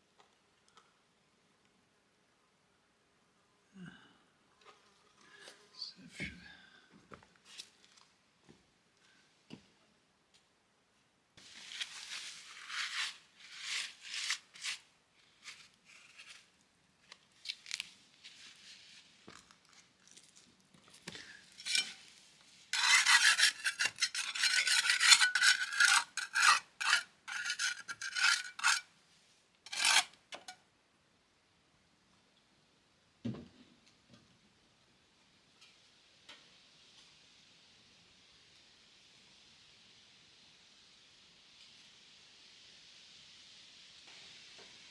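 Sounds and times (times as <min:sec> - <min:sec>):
hand tool scraping concrete: 0:11.7 - 0:14.9, 0:21.5 - 0:28.9, 0:29.7 - 0:30.6.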